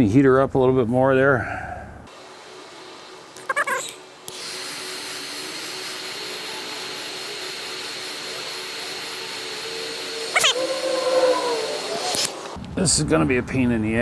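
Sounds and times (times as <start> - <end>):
heat gun blowing with high whine: 2.1 - 12.6.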